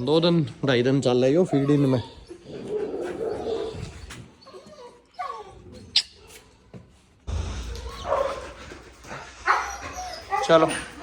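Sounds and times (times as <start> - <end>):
dogs whining: 1.2 - 6.6, 7.7 - 11.0
dog yelping: 1.3 - 6.4, 9.3 - 11.0
low rumble: 7.3 - 10.0.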